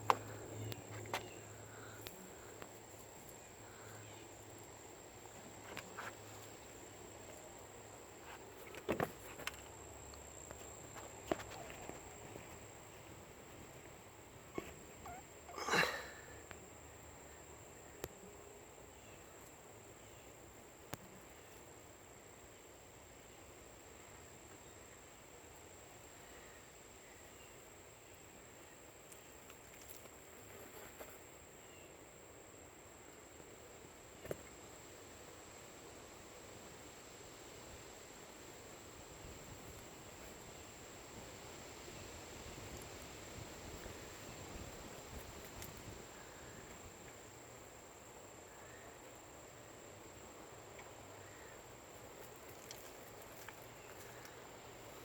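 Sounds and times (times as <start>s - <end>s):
chickens scratching dirt: 0.0s - 1.4s, 5.2s - 9.8s, 10.4s - 13.9s, 29.0s - 31.3s, 52.0s - 55.0s
faint background hiss: 0.0s - 55.0s.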